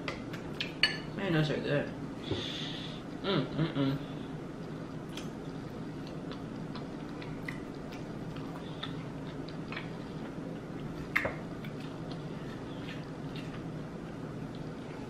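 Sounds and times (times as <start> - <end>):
steady low hum: 0.0 - 15.0
wet chewing clicks: 4.6 - 13.8.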